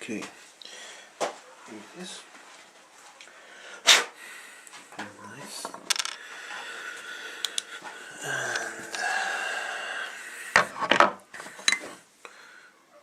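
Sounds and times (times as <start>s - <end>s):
small plastic parts clicking: 7.4s - 7.7s.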